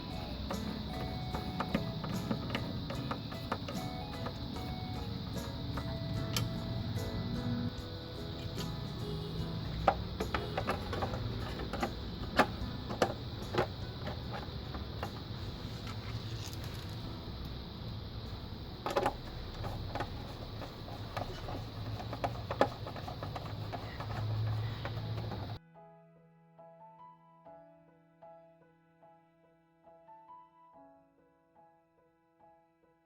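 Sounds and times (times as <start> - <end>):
computer parts and tools clicking: 8.4 - 17.0, 18.8 - 25.6.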